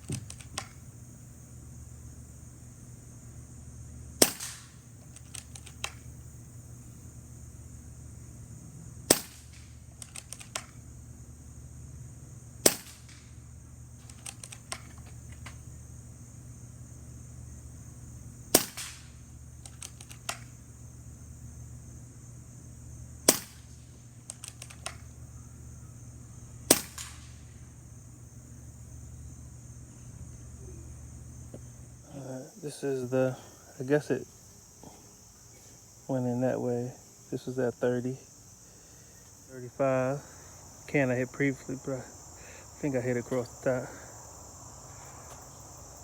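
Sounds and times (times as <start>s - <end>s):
small clicks: 0.0s - 0.9s, 4.2s - 6.2s, 9.1s - 10.8s, 14.0s - 15.7s, 18.5s - 20.6s, 23.3s - 25.2s
air rifle shots: 0.0s - 1.1s, 4.2s - 7.2s, 9.0s - 10.9s, 12.6s - 15.8s, 18.4s - 20.7s, 23.2s - 25.2s, 26.6s - 27.7s.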